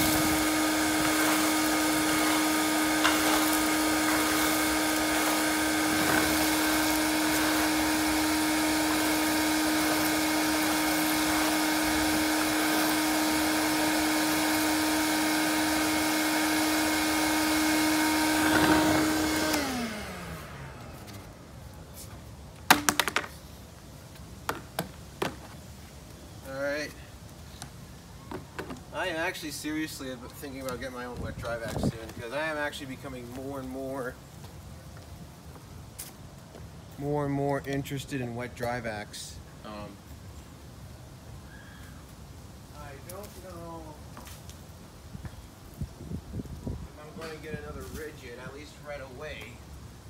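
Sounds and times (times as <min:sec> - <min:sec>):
shop vacuum whining: 0:00.0 - 0:21.6
sharp knocks: 0:22.7 - 0:23.3.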